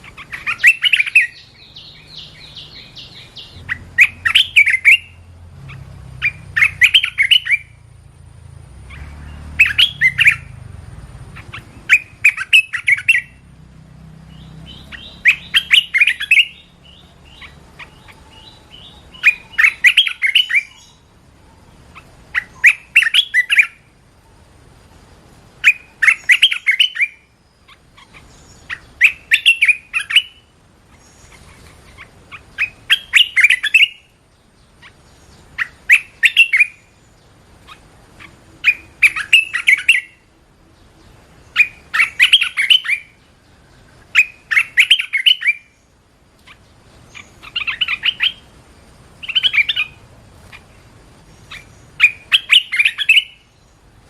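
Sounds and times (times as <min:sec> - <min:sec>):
bird singing short phrases: 0:00.0 - 0:07.8, 0:08.8 - 0:10.7, 0:14.2 - 0:21.1, 0:25.6 - 0:48.6, 0:49.2 - 0:53.9.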